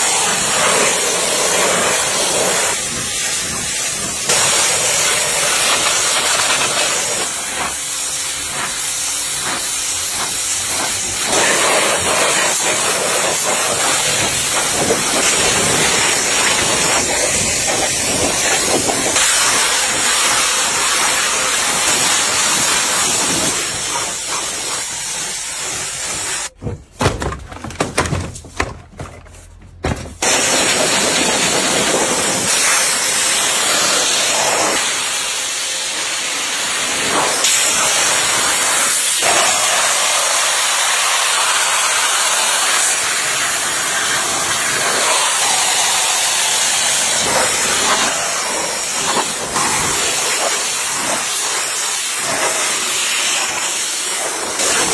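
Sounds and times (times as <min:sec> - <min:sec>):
loud steady hiss: 0:00.0 - 0:26.5.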